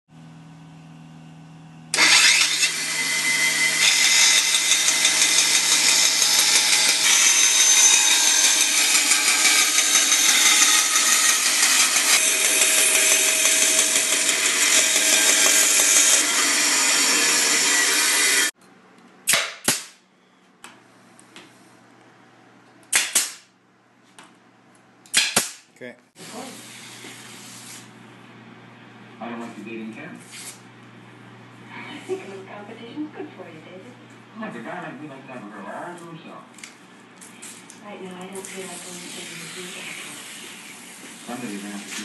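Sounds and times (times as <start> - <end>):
power tool running: 1.9 - 18.6, 38.4 - 42.0.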